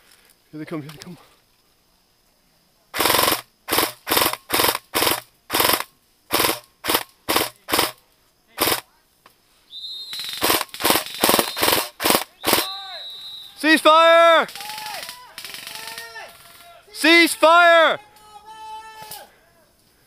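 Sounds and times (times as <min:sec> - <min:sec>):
continuous noise: 0:00.0 - 0:20.0
airsoft gun bursts: 0:02.9 - 0:08.0, 0:08.6 - 0:08.9, 0:10.1 - 0:12.8, 0:14.4 - 0:17.2.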